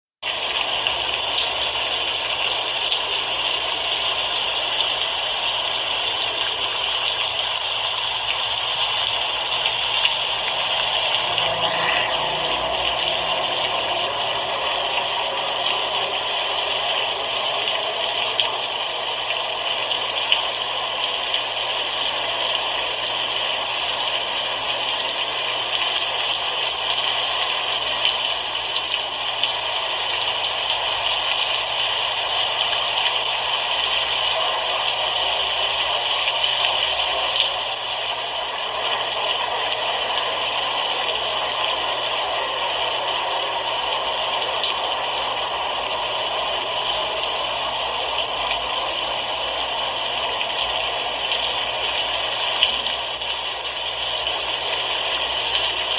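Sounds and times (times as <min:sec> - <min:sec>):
rain falling: 0:00.2 - 0:55.9
faint raindrop ticks: 0:00.3 - 0:10.2.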